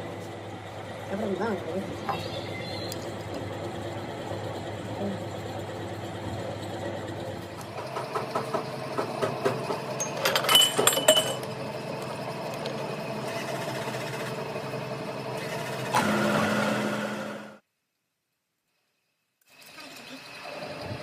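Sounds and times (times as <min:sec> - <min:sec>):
workshop machine humming: 0:00.0 - 0:17.6, 0:19.5 - 0:21.0
metal parts clinking: 0:10.0 - 0:11.5.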